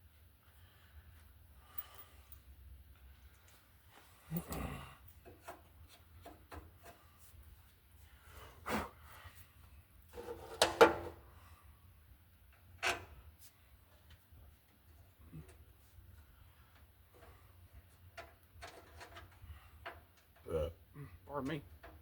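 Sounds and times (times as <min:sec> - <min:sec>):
tools and parts knocking and clanking: 0:05.2 - 0:07.0, 0:10.2 - 0:11.2, 0:12.5 - 0:13.2, 0:16.7 - 0:20.5, 0:21.6 - 0:22.0.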